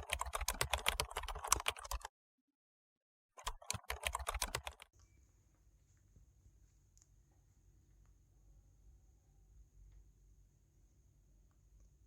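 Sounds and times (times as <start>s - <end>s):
computer keyboard typing: 0.0s - 2.1s, 3.4s - 4.9s
faint hum: 5.0s - 12.0s.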